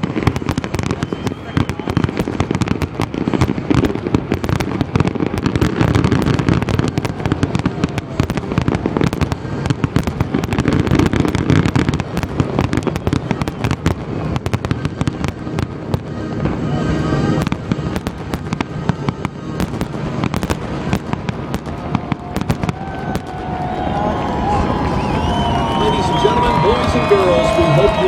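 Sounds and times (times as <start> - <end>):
fireworks bursting and crackling: 0.0 - 28.0.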